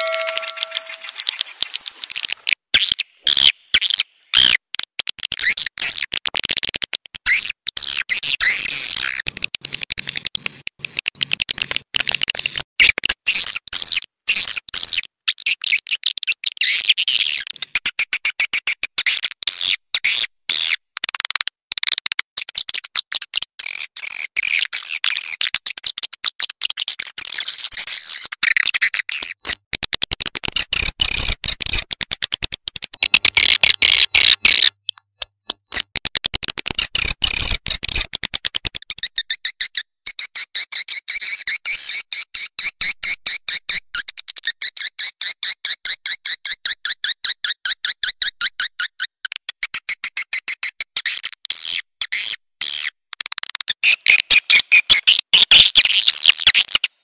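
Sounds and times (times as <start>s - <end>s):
swiftlet chirps: 0.0s - 2.3s.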